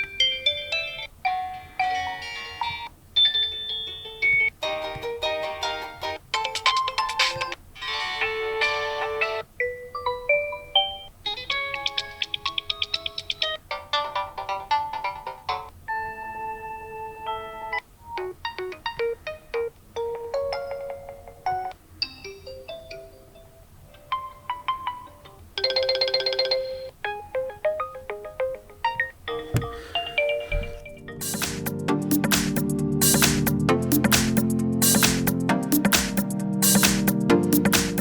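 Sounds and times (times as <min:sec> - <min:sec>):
chiming ringtone melodies: 0:00.0 - 0:04.8, 0:06.8 - 0:13.1, 0:20.0 - 0:31.4.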